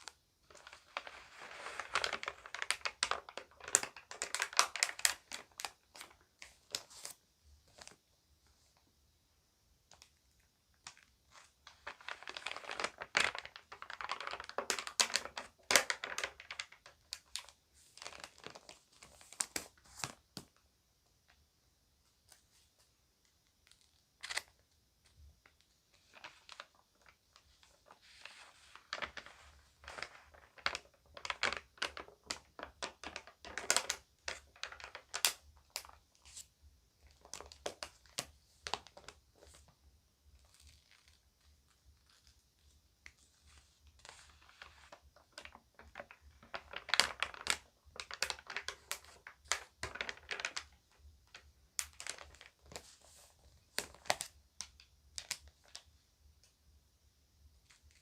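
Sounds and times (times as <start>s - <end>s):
magazine pages rustling: 0.0s - 8.0s, 10.9s - 20.5s, 23.6s - 24.6s, 25.4s - 36.5s, 40.3s - 55.9s.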